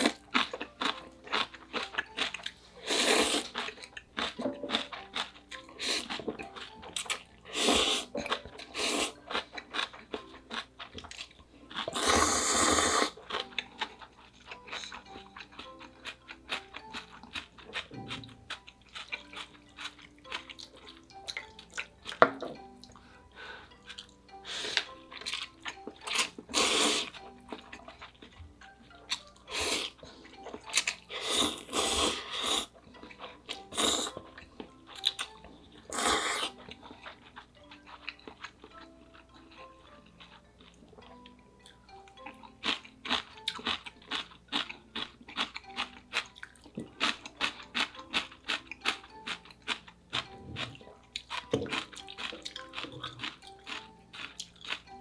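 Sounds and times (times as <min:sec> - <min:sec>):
soft background music: 0:00.0 - 0:55.0
wet chewing: 0:00.0 - 0:55.0
slurping noodles: 0:02.3 - 0:03.8, 0:05.8 - 0:06.4, 0:07.4 - 0:09.2, 0:11.8 - 0:13.3, 0:26.0 - 0:27.3, 0:29.5 - 0:30.0, 0:31.0 - 0:32.8, 0:33.6 - 0:34.2, 0:35.8 - 0:36.8.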